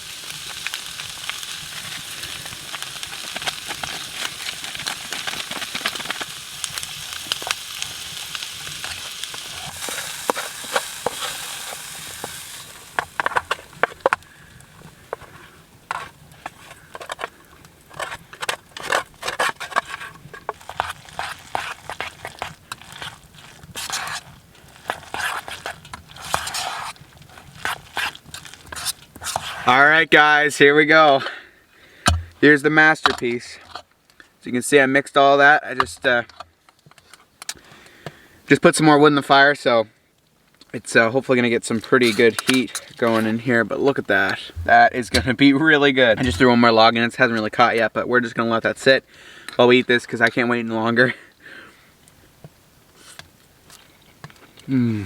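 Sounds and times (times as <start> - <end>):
food sizzling in a pot: 0.0 - 18.7, 19.5 - 30.1
utensil scraping and knocking in pot: 8.7 - 14.2, 15.9 - 24.3, 24.9 - 29.8, 44.2 - 45.5, 46.2 - 46.7.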